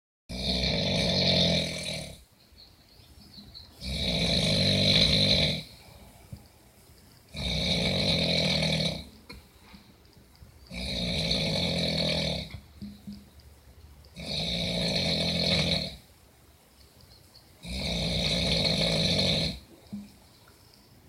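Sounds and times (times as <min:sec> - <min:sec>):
loud rasping snoring: 0:00.3 - 0:02.2, 0:03.8 - 0:05.8, 0:07.3 - 0:09.2, 0:10.7 - 0:12.7, 0:14.1 - 0:16.0, 0:17.6 - 0:19.7
quiet breaths: 0:00.4 - 0:21.0.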